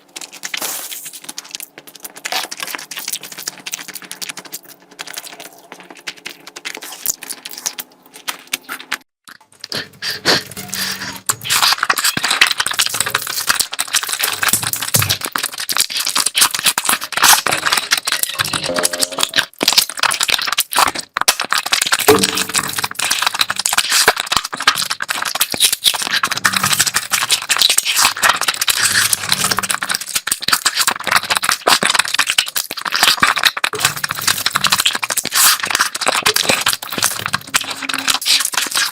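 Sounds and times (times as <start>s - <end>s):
crunching food: 0.0s - 38.9s
wet chewing: 0.0s - 38.9s.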